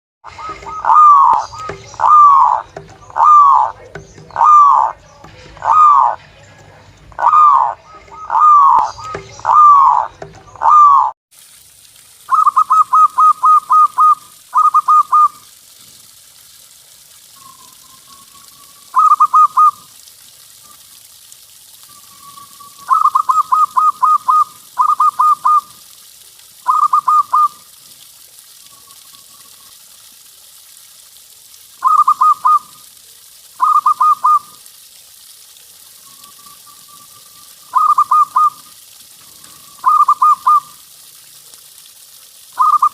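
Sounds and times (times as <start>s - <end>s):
dove cooing: 0.4s - 5.0s, 5.6s - 6.2s, 7.2s - 11.1s, 12.3s - 15.4s, 18.9s - 19.8s, 22.8s - 25.7s, 26.7s - 27.6s, 31.8s - 32.7s, 33.6s - 34.5s, 37.7s - 38.7s, 39.5s - 40.7s
loud swooping bird calls: 7.2s - 11.1s, 12.3s - 15.4s, 18.9s - 19.9s, 39.7s - 40.8s.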